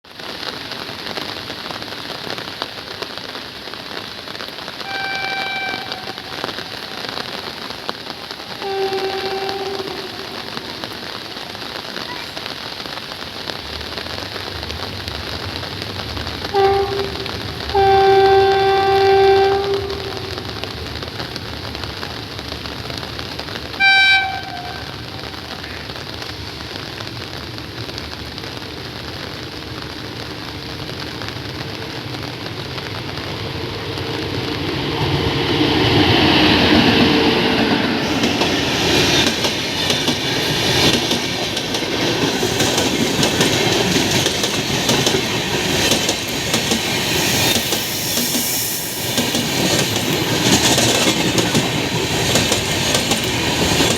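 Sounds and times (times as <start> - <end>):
heavy rain hiss: 0.1 - 53.9
train horn blast: 4.8 - 7.4, 8.6 - 10.9, 16.5 - 20.6, 23.8 - 25.3
train wheels clacking over joints: 38.1 - 53.9.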